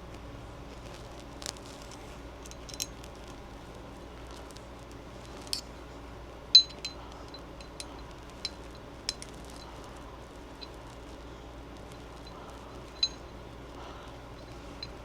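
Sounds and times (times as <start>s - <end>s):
small metal clinks: 1.7s - 3.4s, 5.2s - 5.9s, 6.5s - 11.2s, 11.8s - 15.0s.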